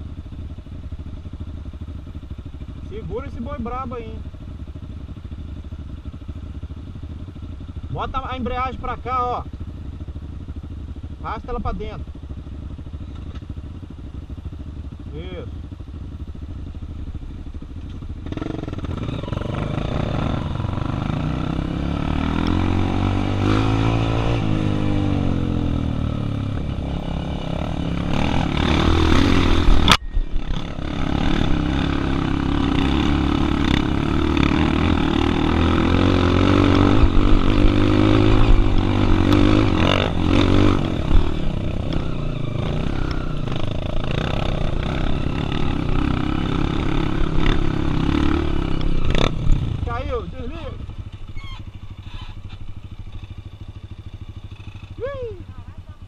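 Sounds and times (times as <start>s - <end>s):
motorcycle engines revving: 0.0s - 56.0s.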